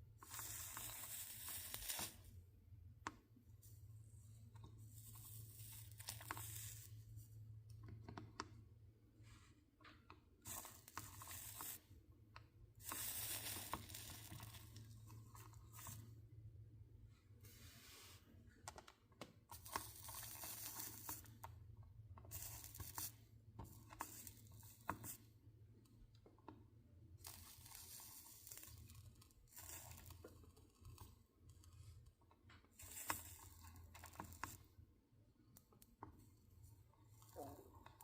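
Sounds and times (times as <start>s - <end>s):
soldering iron sizzling: 0.0s - 2.4s, 4.5s - 7.6s, 9.2s - 16.2s, 19.5s - 25.4s, 27.1s - 32.0s, 32.6s - 38.0s.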